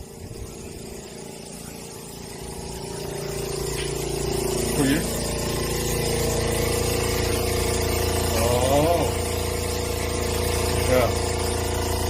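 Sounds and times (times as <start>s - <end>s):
motor humming: 0.0s - 12.0s.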